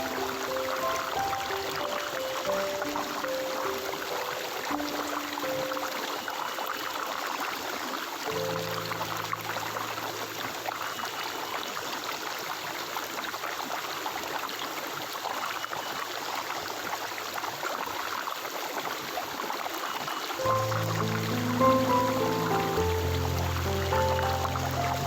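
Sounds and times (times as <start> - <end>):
soft music with low held notes: 0.0 - 6.3, 8.3 - 10.8, 20.4 - 25.0
stream water babbling: 0.0 - 25.0.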